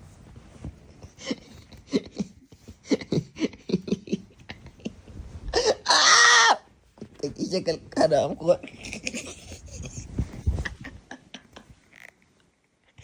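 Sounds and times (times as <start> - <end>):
person laughing and coughing: 1.2 - 4.9.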